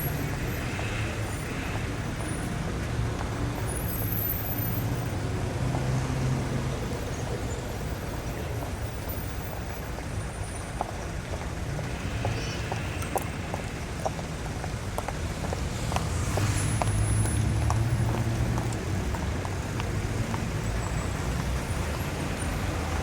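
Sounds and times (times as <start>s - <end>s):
heavy vehicle engine: 0.0s - 23.0s
street traffic rumble: 0.0s - 23.0s.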